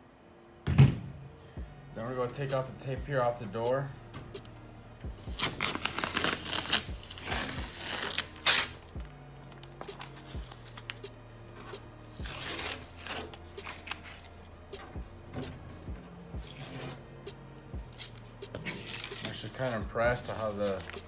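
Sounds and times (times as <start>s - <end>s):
tape and paper peeling off: 5.2s - 15.6s, 16.4s - 21.0s.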